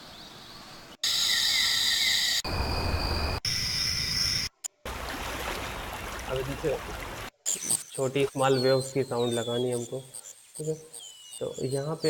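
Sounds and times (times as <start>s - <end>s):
nature ambience: 0.0s - 12.0s
high insect chirring: 7.5s - 12.0s.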